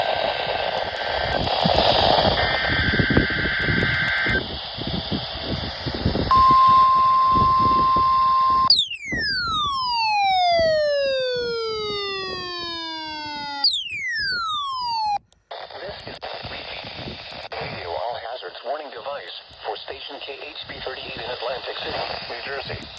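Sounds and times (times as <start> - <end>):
screeching data bursts: 0.8 - 4.8, 5.7 - 15.2
steady warning alarm tone: 2.2 - 4.4, 6.3 - 15.2
falling electronic tone: 6.3 - 15.2.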